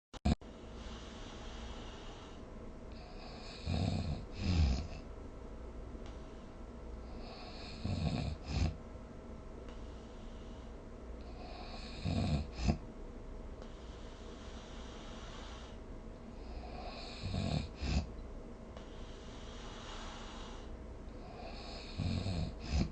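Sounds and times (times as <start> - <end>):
snoring with sharp snorts: 3.0 - 5.0, 7.1 - 8.8, 11.2 - 12.8, 16.4 - 18.2, 18.9 - 22.9.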